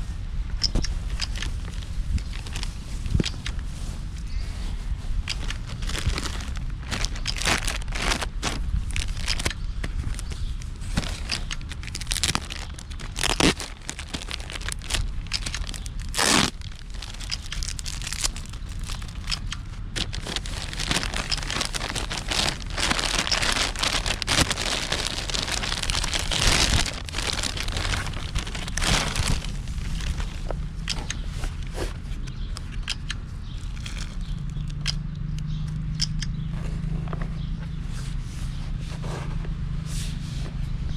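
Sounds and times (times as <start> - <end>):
packaging crinkling and rustling: 1.2 - 3.3, 5.3 - 30.6, 33.6 - 34.7.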